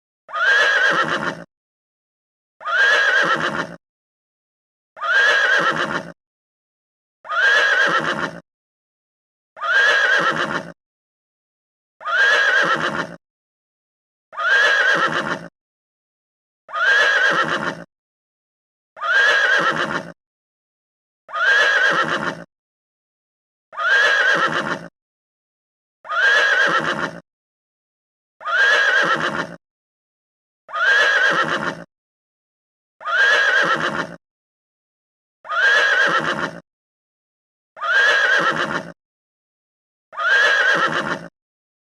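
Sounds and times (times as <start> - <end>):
horse whinnying: 0.3 - 1.5, 2.6 - 3.8, 5.0 - 6.2, 7.2 - 8.4, 9.6 - 10.8, 12.0 - 13.2, 14.3 - 15.5, 16.7 - 17.9, 19.0 - 20.2, 21.3 - 22.5, 23.7 - 24.9, 26.0 - 27.2, 28.4 - 29.6, 30.7 - 31.9, 33.0 - 34.2, 35.4 - 36.6, 37.8 - 39.0, 40.1 - 41.3.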